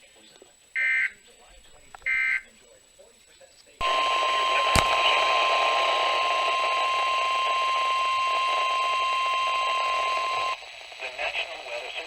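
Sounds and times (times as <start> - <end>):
radio static hiss: 0.0 - 12.0
steady alarm tone: 3.8 - 10.6
brief click: 4.7 - 5.0.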